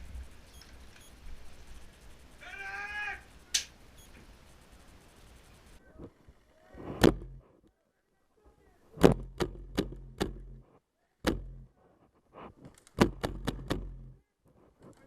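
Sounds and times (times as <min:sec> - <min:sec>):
airsoft gun shots: 0:11.2 - 0:11.7, 0:13.0 - 0:14.1.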